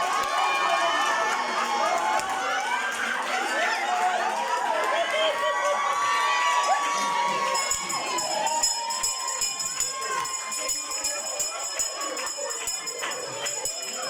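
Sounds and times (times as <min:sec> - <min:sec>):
murmur of voices: 0:00.0 - 0:14.0
tambourine jingling: 0:07.4 - 0:14.0.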